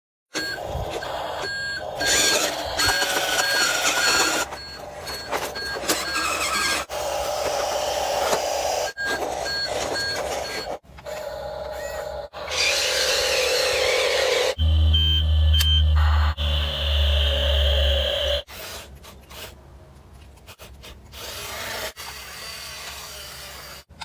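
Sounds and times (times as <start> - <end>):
reversing alarm beeping: 0.4 - 10.8, 11.4 - 18.5
mechanical running noise: 0.4 - 18.6.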